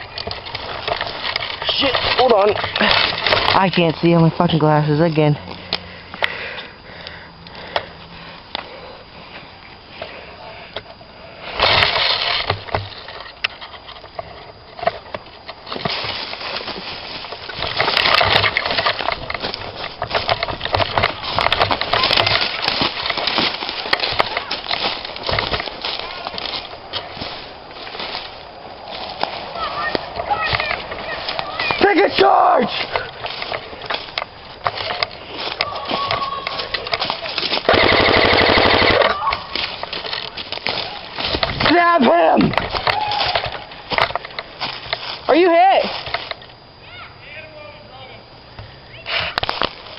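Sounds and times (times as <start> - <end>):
close rustling and scraping: 0.0 - 6.8, 7.6 - 37.7, 39.4 - 46.6
sharp clicks and knocks: 17.3 - 25.7
airsoft rifle full-auto burst: 37.7 - 39.2.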